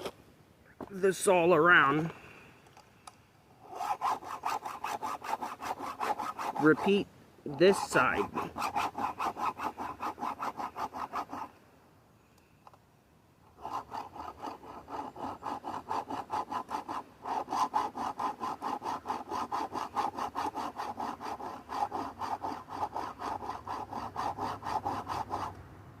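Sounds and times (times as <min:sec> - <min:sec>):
file rasping on chainsaw chain: 0:03.6 - 0:11.5, 0:13.5 - 0:25.5.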